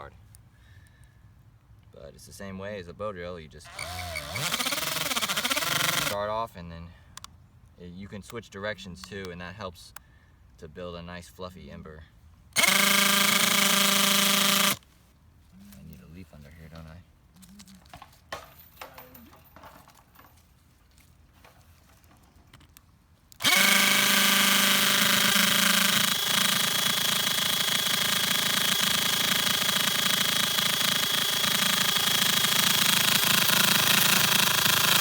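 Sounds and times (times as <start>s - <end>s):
drill whining: 3.7s - 6.2s, 12.6s - 14.8s, 23.3s - 35.0s.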